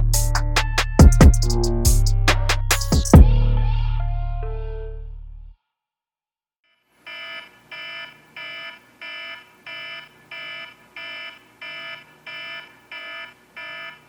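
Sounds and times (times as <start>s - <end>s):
electronic music: 0.0s - 5.5s
electronic alarm beeping: 7.1s - 14.0s.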